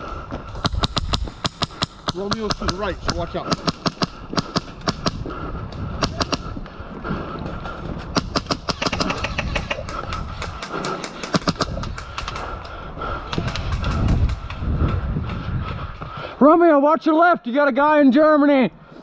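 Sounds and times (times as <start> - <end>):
airsoft guns firing: 0.6 - 5.2, 6.0 - 6.5, 8.2 - 12.5.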